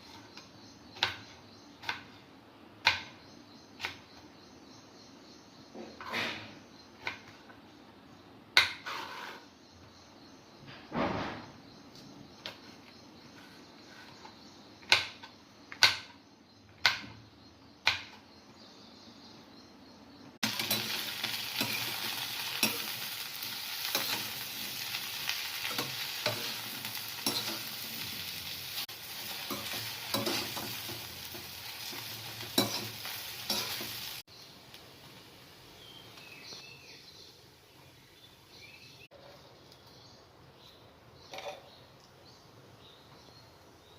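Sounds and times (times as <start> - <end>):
food sizzling in hot oil: 20.4 - 36.2.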